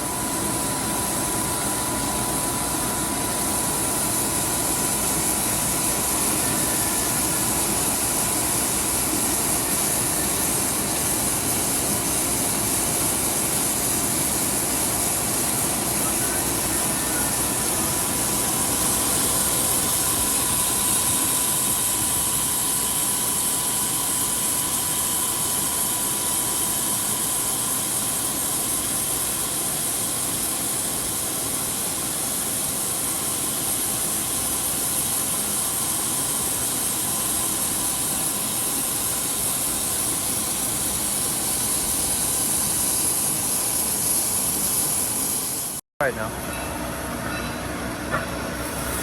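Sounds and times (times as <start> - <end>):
grinding wheel hiss: 0.0 - 45.8
faint whine: 15.6 - 21.3.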